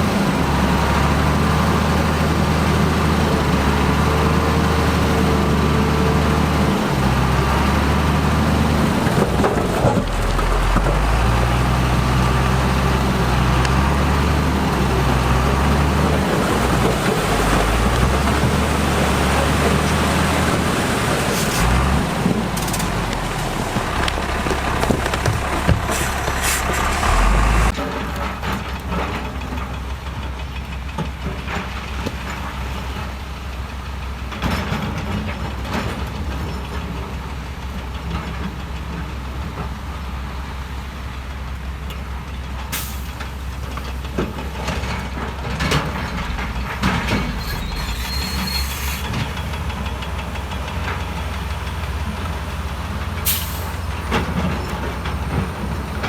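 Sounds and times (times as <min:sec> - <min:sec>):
heavy diesel machinery running: 0:00.0 - 0:56.0.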